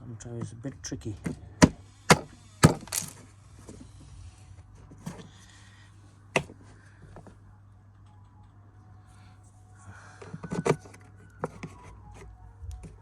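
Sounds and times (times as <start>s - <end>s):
plastic parts clacking into place: 2.7s - 3.2s.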